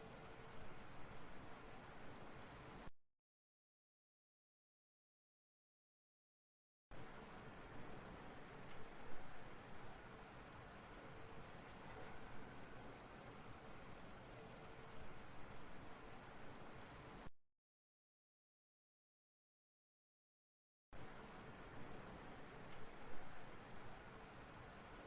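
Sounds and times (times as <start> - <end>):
grasshopper stridulating: 7.0 - 17.3, 21.0 - 25.0.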